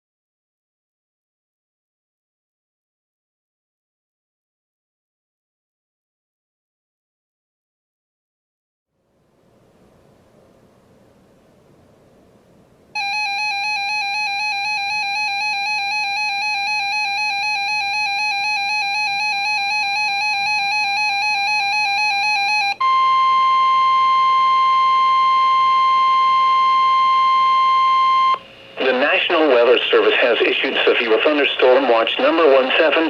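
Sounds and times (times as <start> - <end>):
electronic alert siren warbling: 13.0 - 28.4
steady high alarm tone: 13.0 - 29.1.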